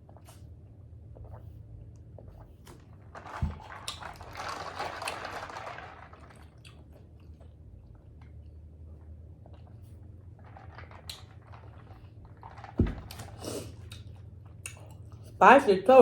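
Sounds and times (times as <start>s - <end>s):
crunchy chewing of taco: 0.0s - 15.4s
low thump: 12.8s - 13.2s.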